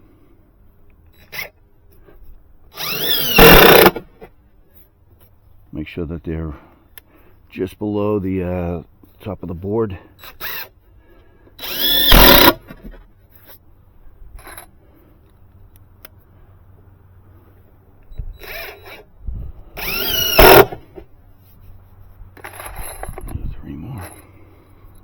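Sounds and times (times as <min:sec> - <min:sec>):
impact driver driving screws: 0:02.8 - 0:04.0, 0:11.6 - 0:12.8, 0:19.8 - 0:21.0.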